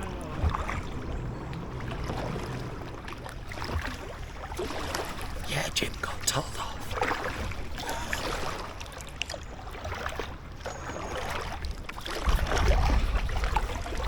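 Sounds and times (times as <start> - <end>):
low rumble: 0.0 - 5.4
paddles splashing in water: 0.0 - 14.0.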